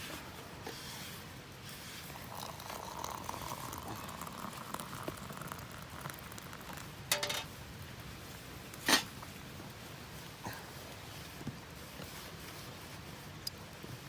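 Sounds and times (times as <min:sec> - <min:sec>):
faint steady crackling: 0:00.0 - 0:14.0
metallic clink: 0:07.1 - 0:07.5.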